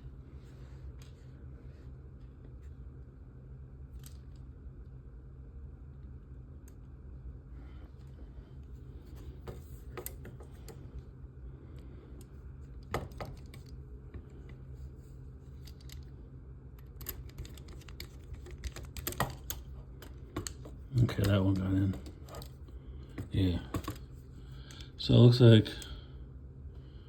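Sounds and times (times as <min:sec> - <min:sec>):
low steady hum: 0:00.0 - 0:27.0
screwdriver clicks and taps: 0:20.3 - 0:21.4.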